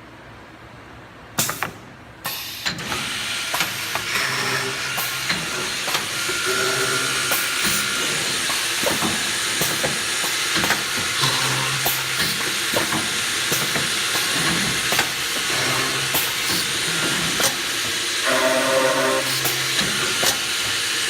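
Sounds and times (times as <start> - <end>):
drilling machine hiss: 2.3 - 21.0.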